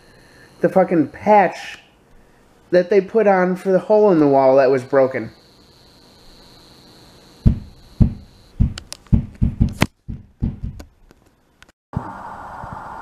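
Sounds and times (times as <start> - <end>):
room noise hiss: 0.0 - 13.0
dull thumps and knocks: 7.4 - 11.0.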